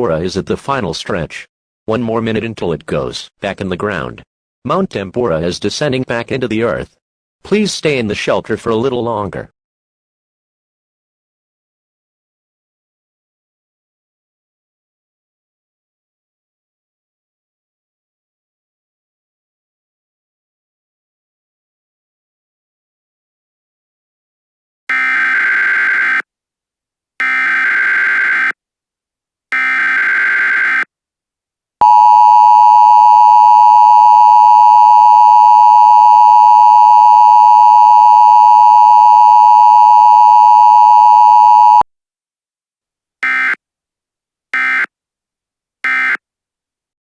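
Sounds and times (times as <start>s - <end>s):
two-tone attention signal: 31.8s - 41.8s.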